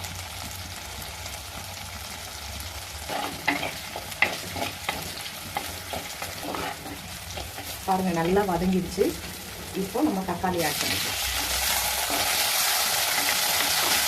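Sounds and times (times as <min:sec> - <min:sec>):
garlic sizzling in oil: 0:00.0 - 0:14.0
spatula scraping pan: 0:03.1 - 0:09.8, 0:10.7 - 0:14.0.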